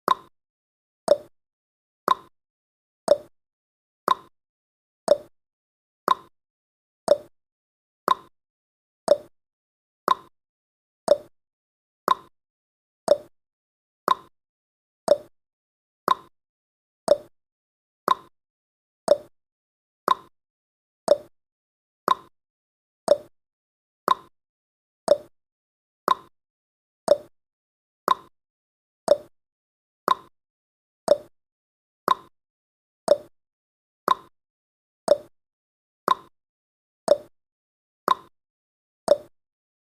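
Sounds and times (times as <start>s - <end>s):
clock ticking: 1.1s - 1.3s, 3.1s - 3.3s, 5.1s - 5.3s, 7.1s - 7.3s, 9.1s - 9.3s, 11.1s - 11.3s, 13.1s - 13.3s, 15.1s - 15.3s, 19.1s - 19.3s, 21.1s - 21.3s, 29.1s - 29.3s, 31.1s - 31.3s, 33.1s - 33.3s, 35.1s - 35.3s, 37.1s - 37.3s, 39.1s - 39.3s.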